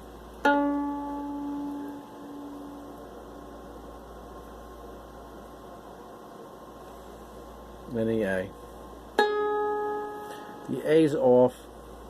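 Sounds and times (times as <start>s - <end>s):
faint steady hum: 0.0s - 12.0s
viola string plucked: 0.4s - 3.9s, 9.2s - 10.8s.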